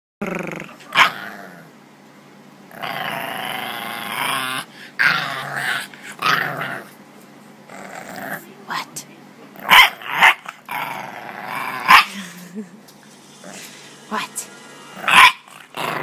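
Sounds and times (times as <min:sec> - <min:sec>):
puppy growling and grumbling: 0:00.2 - 0:01.8, 0:02.7 - 0:07.0, 0:07.6 - 0:08.8, 0:09.5 - 0:12.6, 0:13.4 - 0:13.8, 0:15.0 - 0:16.0.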